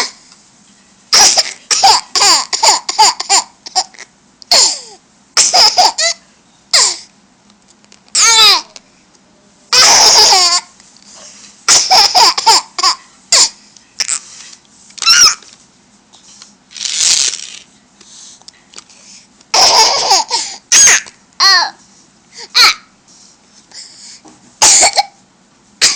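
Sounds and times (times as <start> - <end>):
child laughing and squealing: 15.0 - 15.5.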